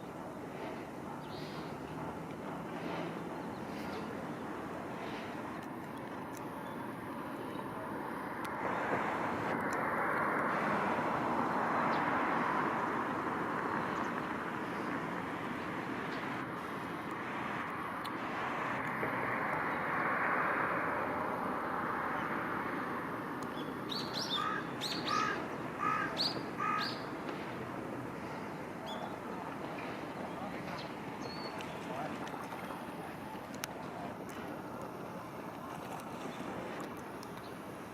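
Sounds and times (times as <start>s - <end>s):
steady rushing noise: 0.0s - 23.4s.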